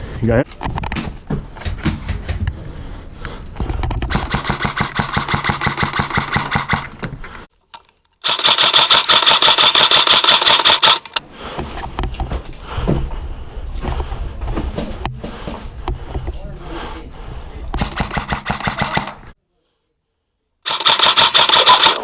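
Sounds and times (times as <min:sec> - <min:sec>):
airsoft rifle automatic fire: 0:04.1 - 0:06.9, 0:08.2 - 0:11.0, 0:17.8 - 0:19.3, 0:20.7 - 0:22.0.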